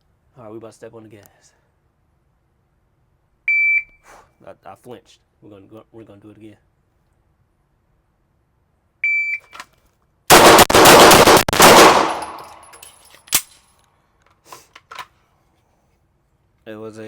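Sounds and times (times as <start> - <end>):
shot timer beep: 3.5 - 4.0, 9.0 - 9.4
rapid pistol shots indoors: 10.3 - 12.7.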